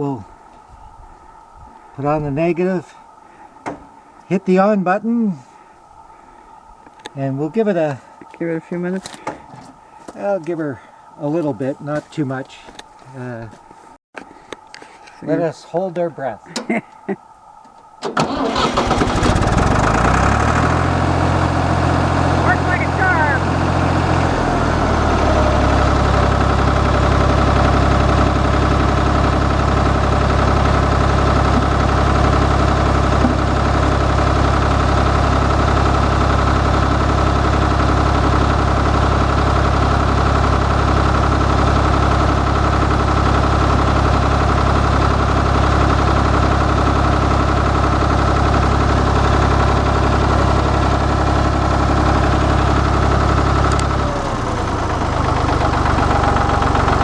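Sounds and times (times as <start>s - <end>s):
tractor engine idling: 18.0s - 57.0s.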